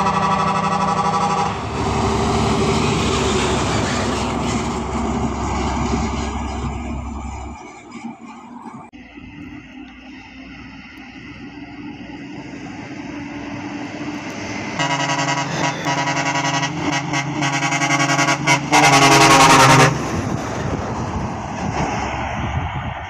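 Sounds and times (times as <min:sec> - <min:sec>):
truck air horn blasts: 0:00.0 - 0:06.6, 0:14.7 - 0:20.1
truck approaching: 0:00.0 - 0:23.0.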